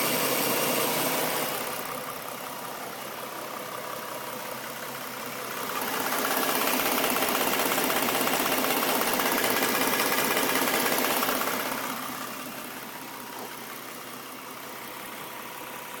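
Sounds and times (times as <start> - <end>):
car engine idling: 0.0 - 16.0
rapid ticking engine knock: 4.3 - 15.6.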